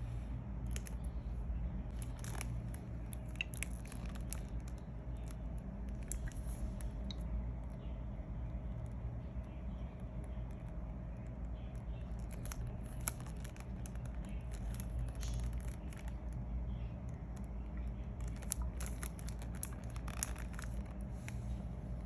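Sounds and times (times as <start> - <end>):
steady low hum: 0.0 - 22.0
packaging rustling and clicks: 1.9 - 5.4, 18.2 - 21.4.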